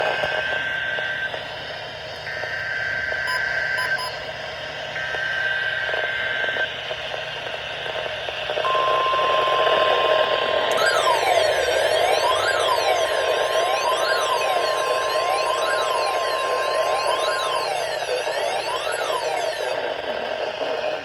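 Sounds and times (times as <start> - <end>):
screeching digital data tones: 2.2 - 4.3, 8.6 - 21.0
steady radio alert tone: 8.6 - 21.0.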